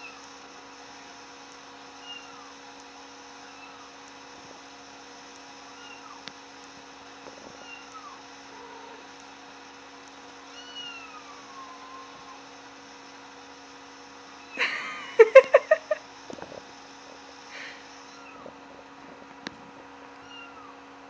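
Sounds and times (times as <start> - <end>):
cat mewing: 10.5 - 12.5.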